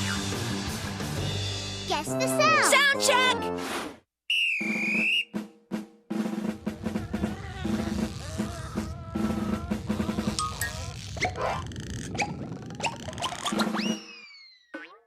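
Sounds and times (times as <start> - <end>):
high whistle-like tone: 4.3 - 5.3
drum roll: 4.6 - 10.4.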